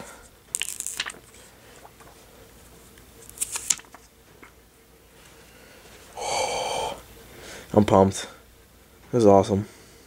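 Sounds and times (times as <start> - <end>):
plastic film peeling: 0.5 - 2.1, 3.2 - 4.0
scratchy crinkle: 0.6 - 2.3, 3.2 - 4.5.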